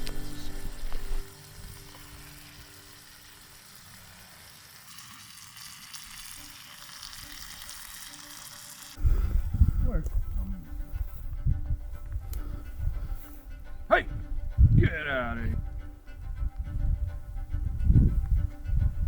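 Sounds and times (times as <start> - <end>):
steady hiss: 0.0 - 9.7.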